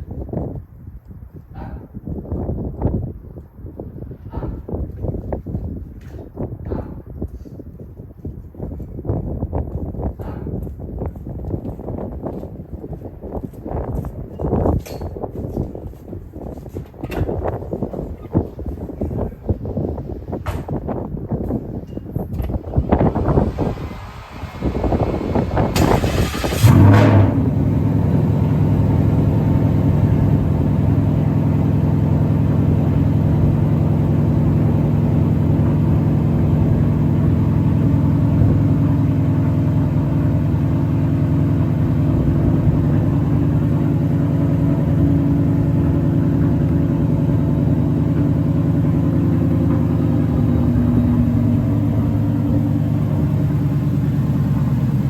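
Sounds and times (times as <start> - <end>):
car engine starting and idling: 21.7 - 55.0.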